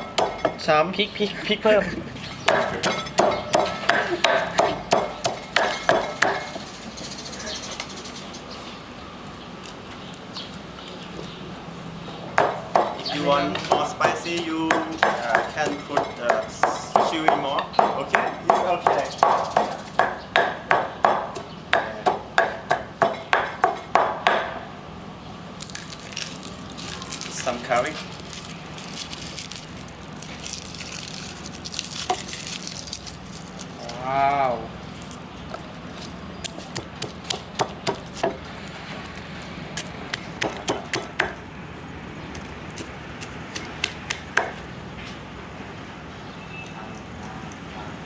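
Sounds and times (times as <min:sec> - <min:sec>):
pestle pounding in a mortar: 0:00.0 - 0:00.7, 0:02.4 - 0:06.7, 0:12.3 - 0:24.7, 0:36.4 - 0:38.4, 0:39.8 - 0:41.5, 0:42.8 - 0:44.7.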